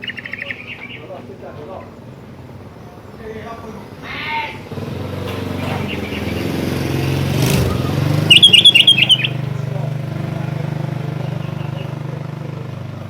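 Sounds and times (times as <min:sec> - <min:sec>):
bird chirping: 0:00.0 - 0:02.9, 0:05.6 - 0:09.8
engine humming: 0:00.0 - 0:13.0.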